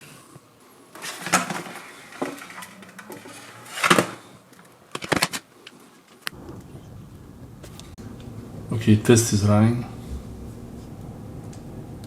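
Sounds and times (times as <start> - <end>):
brief rustling: 1.0 - 6.7.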